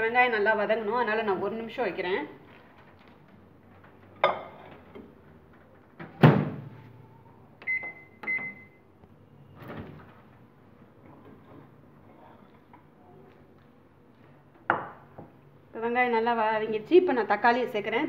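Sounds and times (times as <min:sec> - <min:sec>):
keypad beeps: 0:07.6 - 0:08.8.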